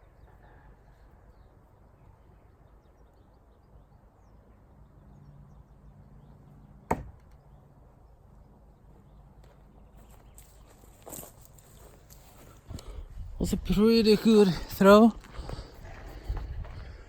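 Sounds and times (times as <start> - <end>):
faint birds chirping: 0.0 - 17.0
knife hitting target: 6.9 - 7.2.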